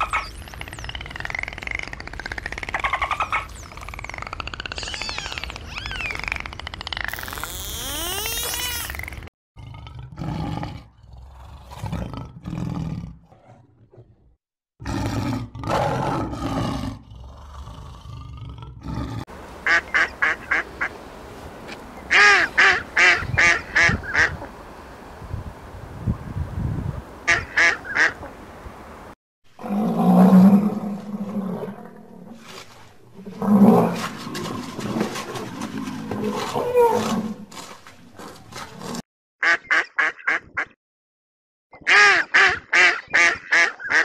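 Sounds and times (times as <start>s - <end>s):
animal calls: 0.0s - 9.0s
short quick pitched calls: 7.1s - 9.2s.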